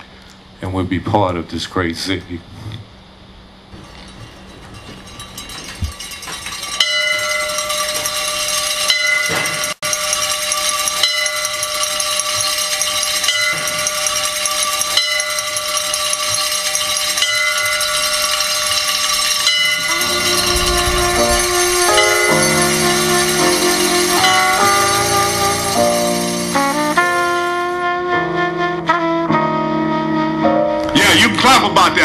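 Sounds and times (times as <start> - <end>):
bells ringing: 3.8 - 27.7.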